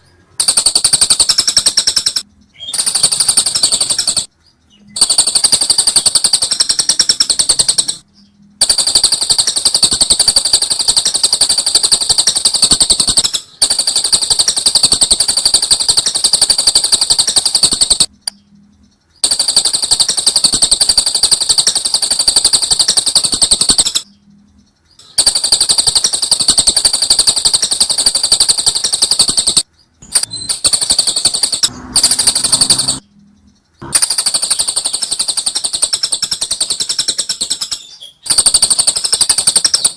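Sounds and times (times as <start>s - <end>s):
lovebird rapid high chattering: 0.0s - 39.9s.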